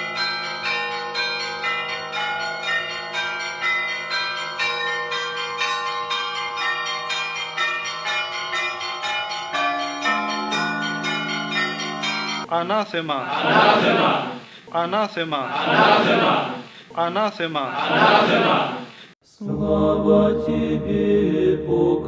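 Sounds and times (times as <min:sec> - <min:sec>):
church bells pealing: 0:00.0 - 0:12.5
deep bell hum: 0:07.6 - 0:12.4.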